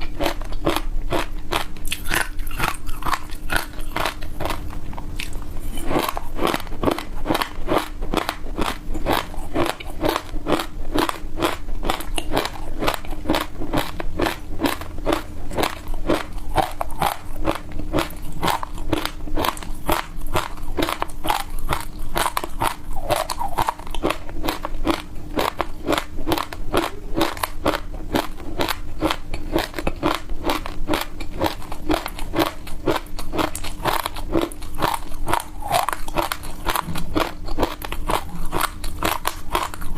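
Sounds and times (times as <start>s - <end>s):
crunching and chewing frozen fruit: 0.0s - 39.9s.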